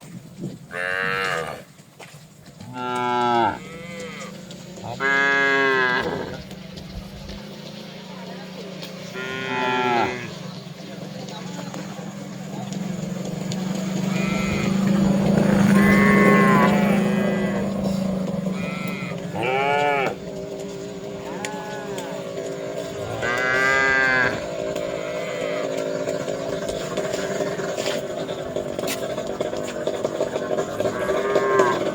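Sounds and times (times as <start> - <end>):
cattle mooing: 0.7 - 1.7, 2.6 - 6.6, 9.1 - 10.6, 14.0 - 26.1, 30.6 - 31.9.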